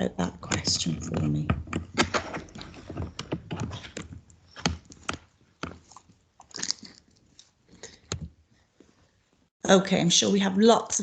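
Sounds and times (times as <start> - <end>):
sharp clicks and light knocks: 0.4 - 6.1.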